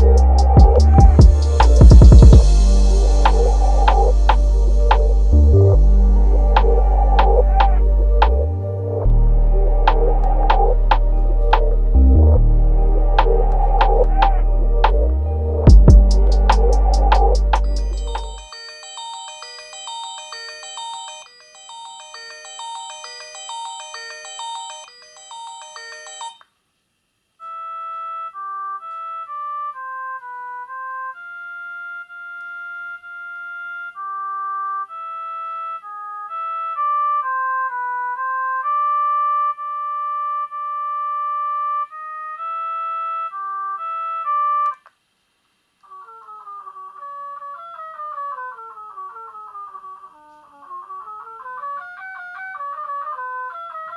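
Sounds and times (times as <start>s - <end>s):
phone ringtone melodies: 0.0s - 26.4s.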